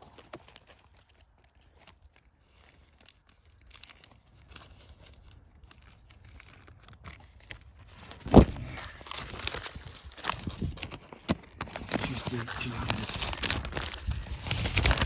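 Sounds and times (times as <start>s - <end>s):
leaves and twigs rustling: 0.0s - 15.0s
sharp loud crunch: 8.2s - 9.5s.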